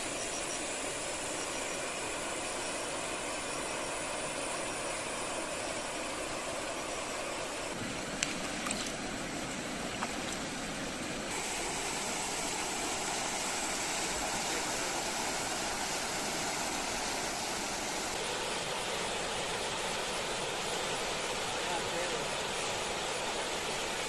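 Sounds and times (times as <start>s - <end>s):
river water flowing: 0.0s - 24.0s.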